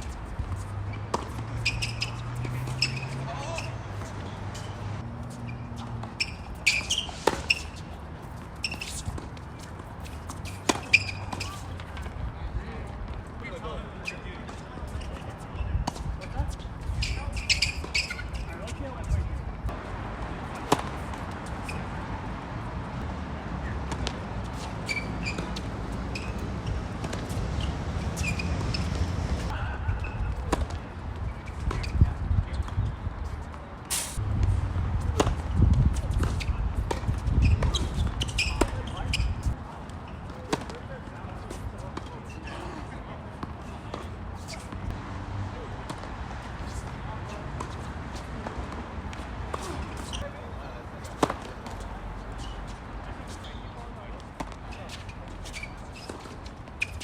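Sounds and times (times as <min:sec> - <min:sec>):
tennis shoes squeaking: 0:00.0 - 0:23.0, 0:23.6 - 0:34.2, 0:35.0 - 0:57.0
tennis ball bouncing on hard court: 0:00.1 - 0:04.9, 0:19.7 - 0:21.9, 0:34.4 - 0:39.4, 0:51.1 - 0:51.8
tennis ball struck by rackets: 0:20.4 - 0:21.5, 0:33.9 - 0:38.8
wind rumbling on microphone: 0:29.0 - 0:33.4, 0:34.2 - 0:39.6.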